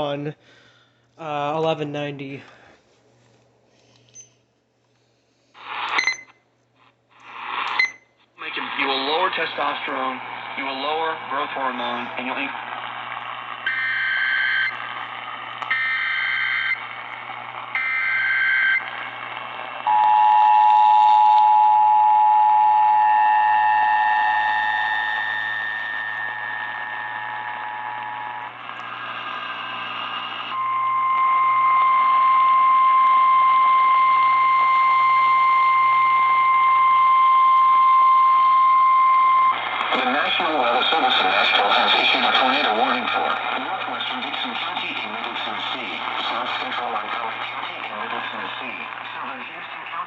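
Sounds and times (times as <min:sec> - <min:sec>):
radio static: 0:05.6 - 0:06.2, 0:06.8 - 0:21.6, 0:22.4 - 0:37.0, 0:38.9 - 0:50.0
steady warning tone: 0:09.0 - 0:41.3.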